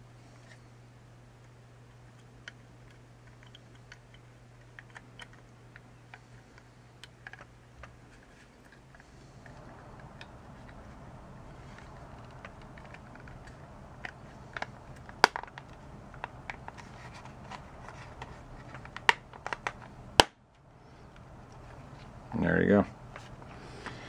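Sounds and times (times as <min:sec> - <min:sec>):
low steady hum: 0:00.0 - 0:24.0
sharp plastic snaps: 0:11.9 - 0:21.2.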